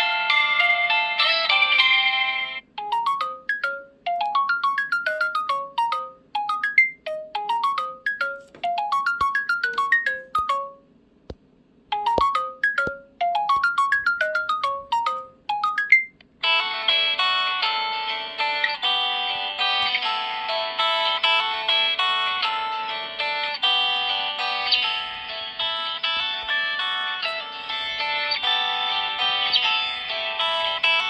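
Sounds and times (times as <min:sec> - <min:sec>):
phone ringtone bright notes: 0:02.0 - 0:10.8, 0:11.9 - 0:16.1.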